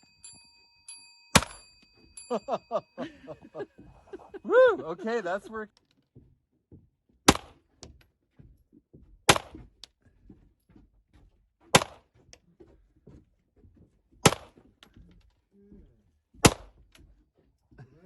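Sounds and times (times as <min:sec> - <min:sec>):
pistol shots: 0:01.4 - 0:01.6, 0:07.3 - 0:07.6, 0:09.3 - 0:09.6, 0:11.8 - 0:12.0, 0:14.2 - 0:14.6, 0:16.4 - 0:16.7.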